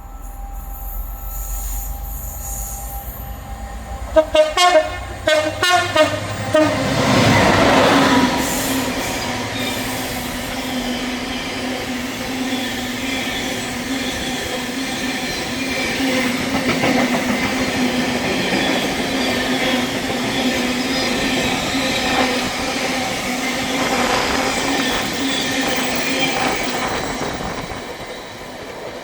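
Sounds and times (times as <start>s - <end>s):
freight train rumbling past: 0.0s - 29.0s.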